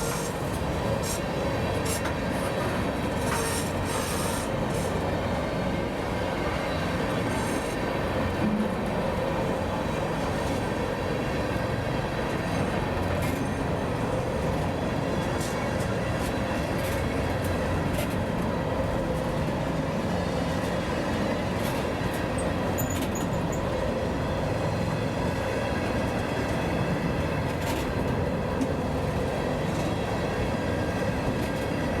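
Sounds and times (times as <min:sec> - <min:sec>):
sharp clicks of train wheels: 0:00.0 - 0:05.0, 0:15.4 - 0:18.5, 0:21.6 - 0:23.7, 0:27.5 - 0:28.8
freight train wheels rumbling on rail: 0:00.0 - 0:32.0.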